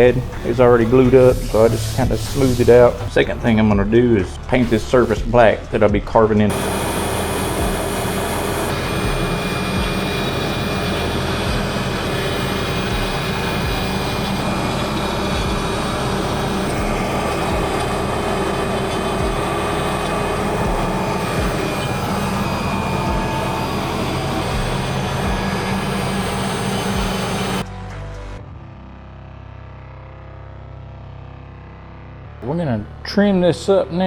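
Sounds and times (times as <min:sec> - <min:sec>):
woodshop machine humming: 0:00.0 - 0:05.6, 0:06.4 - 0:27.7.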